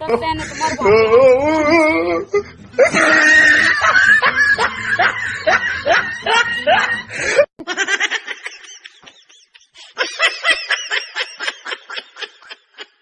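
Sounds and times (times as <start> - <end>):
rapid high-pitched laughter: 2.8 - 13.0.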